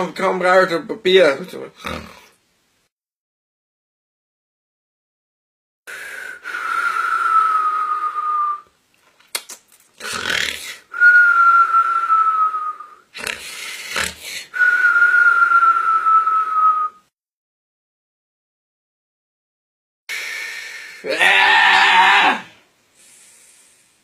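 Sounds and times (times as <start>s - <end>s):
whistling mock snoring: 5.9s - 8.7s, 10.0s - 17.1s
rough snorting breaths: 13.1s - 14.8s.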